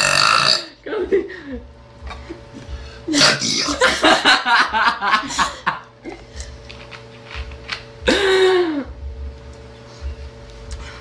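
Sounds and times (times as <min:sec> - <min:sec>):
girl burping: 0:00.0 - 0:00.8, 0:03.1 - 0:03.8.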